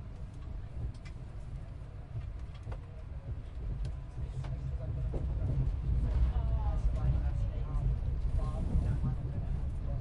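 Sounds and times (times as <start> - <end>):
train rumbling along track: 0.0 - 10.0
faint passenger voices: 1.2 - 10.0.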